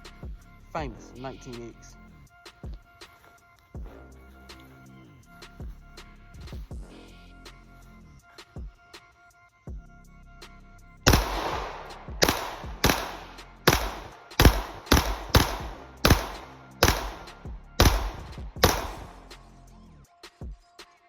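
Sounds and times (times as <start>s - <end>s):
background music: 0.0s - 21.0s
pistol shots: 11.1s - 19.3s.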